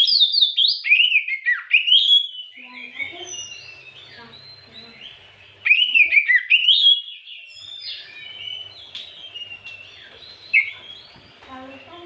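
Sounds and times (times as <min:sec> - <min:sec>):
bird singing whistled notes: 0:00.0 - 0:12.0.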